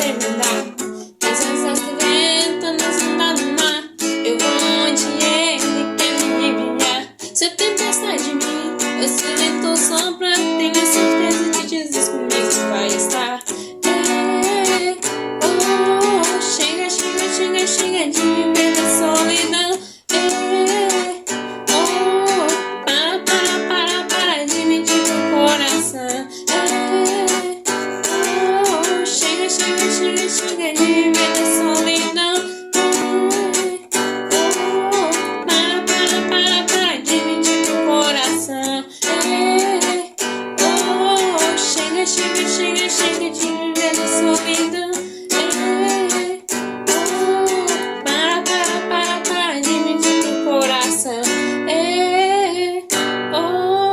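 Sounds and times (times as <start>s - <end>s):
acoustic guitar strummed and plucked: 0.0s - 53.9s
person singing: 0.0s - 53.9s.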